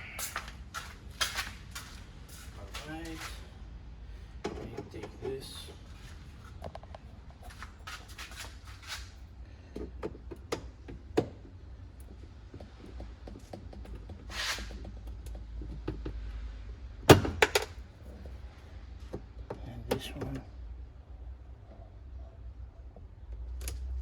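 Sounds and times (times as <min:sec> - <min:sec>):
clicks and knocks of car parts: 0:04.4 - 0:05.3, 0:06.6 - 0:16.2, 0:17.0 - 0:17.9.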